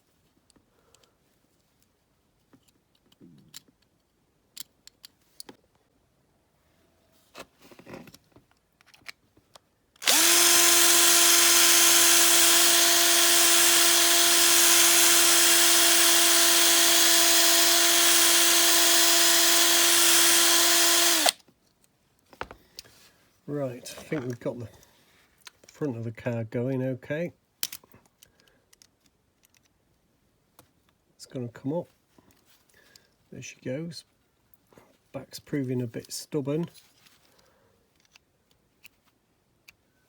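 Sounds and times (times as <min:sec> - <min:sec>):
small electric drill running: 0:10.0 - 0:21.4.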